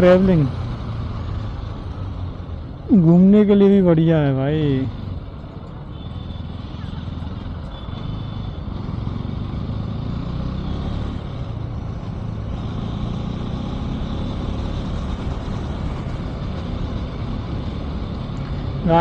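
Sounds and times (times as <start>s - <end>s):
road and wind noise: 0.0s - 19.0s
motorcycle engine running: 5.4s - 19.0s.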